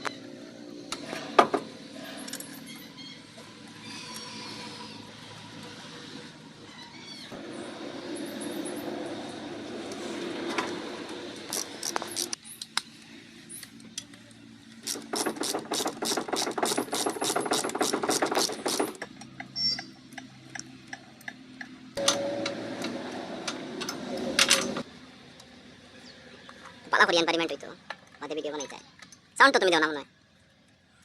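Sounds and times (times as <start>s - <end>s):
ratchet wrench clicking: 11.5s - 12.7s, 14.8s - 19.8s.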